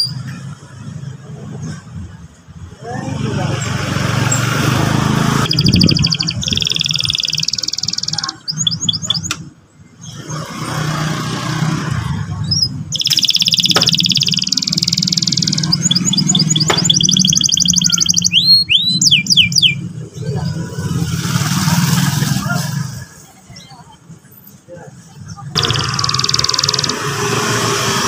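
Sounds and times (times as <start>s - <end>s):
canary singing trills: 4.9s - 10.6s, 12.4s - 21.0s, 25.2s - 27.6s.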